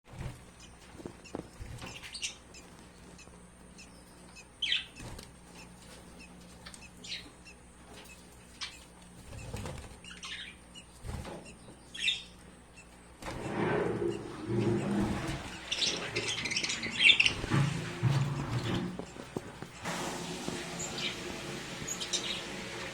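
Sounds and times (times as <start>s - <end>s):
wings flapping and rustling: 0.1s - 3.6s, 4.2s - 11.8s, 13.0s - 22.9s
birds chirping: 0.1s - 22.9s.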